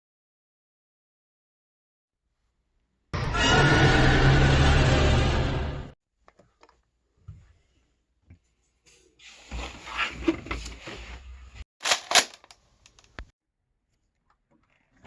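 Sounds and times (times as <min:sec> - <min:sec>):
sharp cracks: 0:11.8 - 0:13.2.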